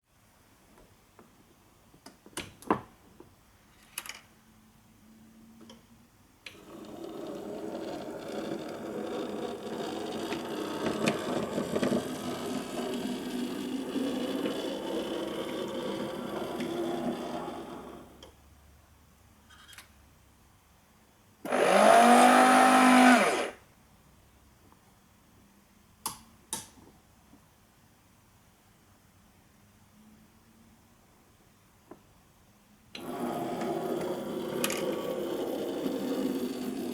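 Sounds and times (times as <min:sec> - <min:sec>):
motor whine: 0:21.5 - 0:23.6
point motor mechanical run: 0:21.5 - 0:23.6, 0:33.0 - 0:36.9.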